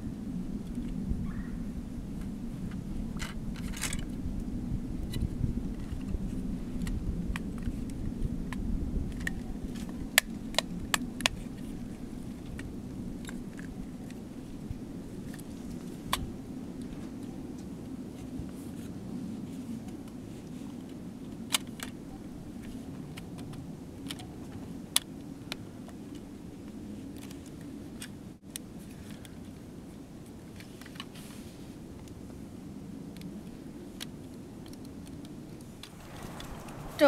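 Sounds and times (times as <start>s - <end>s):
steady low rumble: 0.0s - 24.1s, 35.6s - 37.0s.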